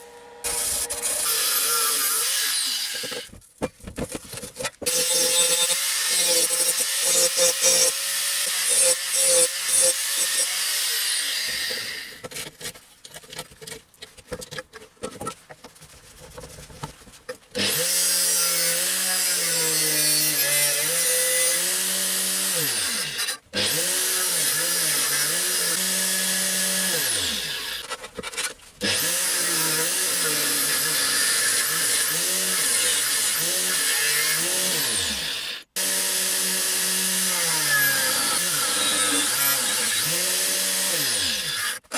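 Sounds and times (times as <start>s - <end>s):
angle grinder cutting metal: 0.0s - 3.3s, 4.9s - 12.2s, 17.6s - 41.9s
clattering and clicks: 12.2s - 17.5s.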